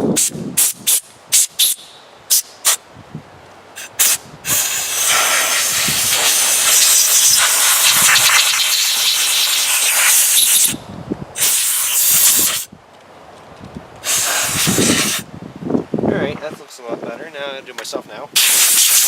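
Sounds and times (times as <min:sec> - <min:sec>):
compressed air blow gun hissing: 0:03.8 - 0:10.8, 0:11.4 - 0:12.7, 0:14.0 - 0:15.3, 0:18.4 - 0:19.0.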